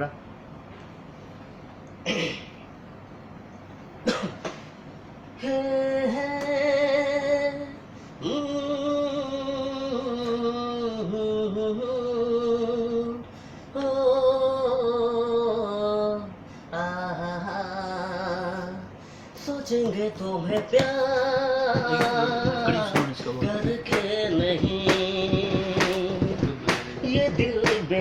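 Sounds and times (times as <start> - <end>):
man singing wordless notes: 5.4 - 13.2, 13.8 - 28.0
breaths: 7.8 - 8.2, 13.2 - 13.8, 16.4 - 16.7, 18.9 - 19.4.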